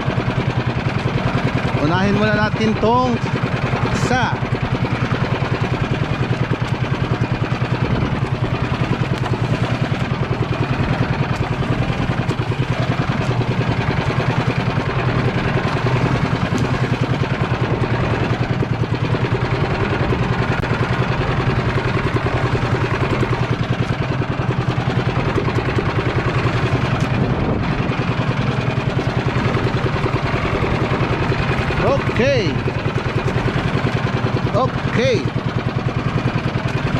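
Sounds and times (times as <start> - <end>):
small engine running: 0.0 - 36.9.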